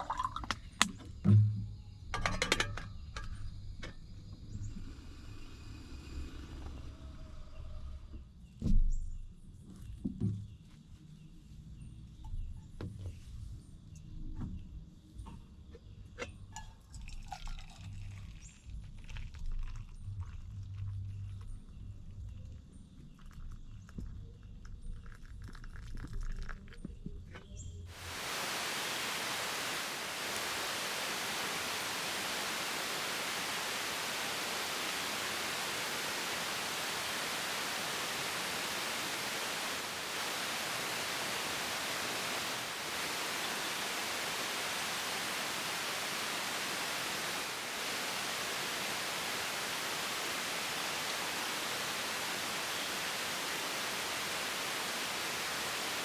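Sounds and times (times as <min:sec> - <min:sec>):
steady rushing hiss: 0:27.9 - 0:56.0.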